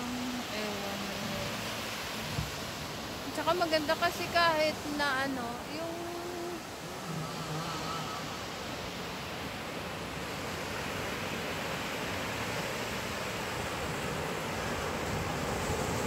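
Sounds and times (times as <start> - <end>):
ocean waves breaking: 0.0 - 16.0.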